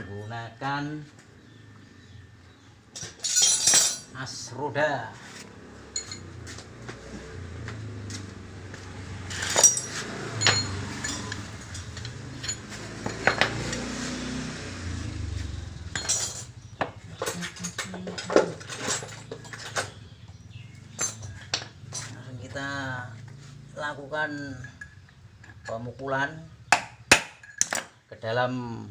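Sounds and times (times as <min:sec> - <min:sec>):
metal parts clinking and knocking: 0:03.0 - 0:04.1, 0:05.9 - 0:06.3, 0:09.3 - 0:13.8, 0:15.9 - 0:20.1, 0:20.8 - 0:22.2, 0:27.3 - 0:28.0.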